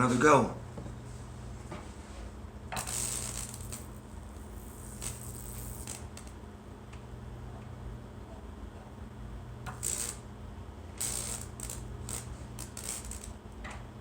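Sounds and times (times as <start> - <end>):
electric arcing crackles: 2.7 - 6.4, 9.6 - 10.3, 10.9 - 13.5.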